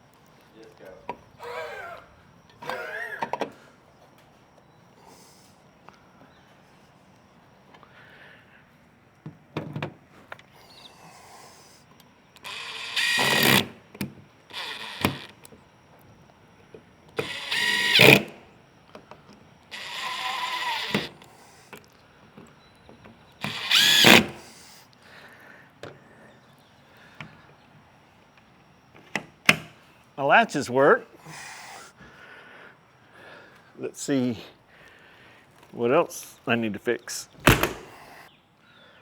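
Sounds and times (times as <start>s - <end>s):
power drill running: 12.3s - 15.9s, 16.5s - 21.9s, 23.3s - 24.7s.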